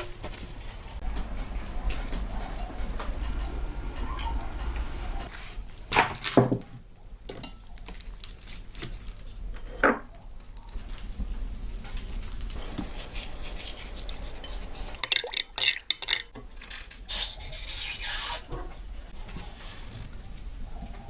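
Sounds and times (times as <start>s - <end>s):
utensils scraping cookware: 12.6s - 18.7s.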